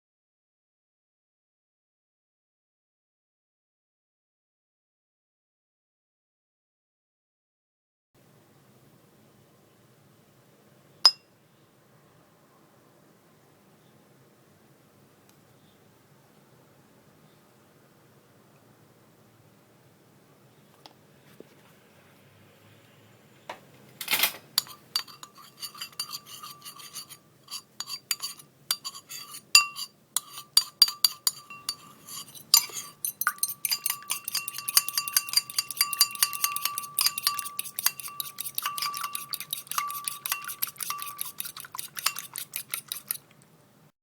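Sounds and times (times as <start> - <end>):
utensil clinking ceramic bowl: 24.6 - 43.4.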